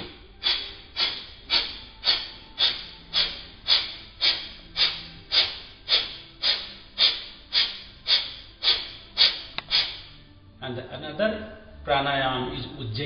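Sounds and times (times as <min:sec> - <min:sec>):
man exhaling sharply through nose: 0:00.4 - 0:10.2.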